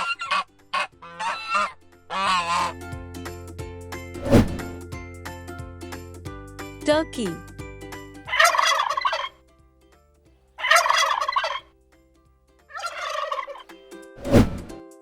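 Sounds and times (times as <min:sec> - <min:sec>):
turkey gobbling: 0:00.0 - 0:02.8, 0:08.3 - 0:09.3, 0:10.6 - 0:11.6, 0:12.7 - 0:13.6
loud falling sweep: 0:04.2 - 0:04.8, 0:14.2 - 0:14.8.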